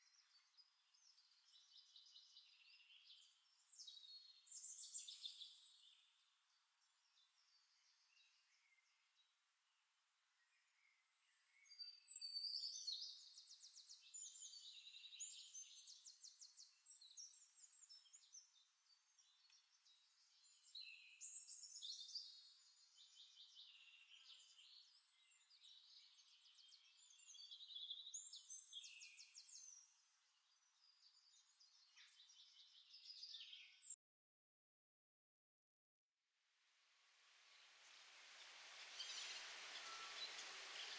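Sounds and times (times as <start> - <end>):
songbird chirps and trills: 10.5 - 33.9, 37.0 - 40.9.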